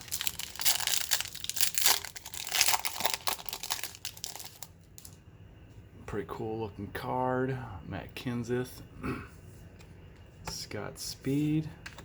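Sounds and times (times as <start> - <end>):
wrapper crinkling and tearing: 0.0 - 5.2.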